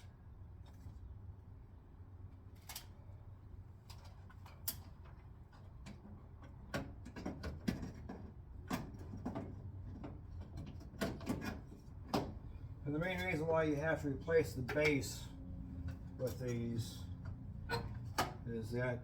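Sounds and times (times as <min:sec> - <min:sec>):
low steady hum: 0:12.1 - 0:19.0.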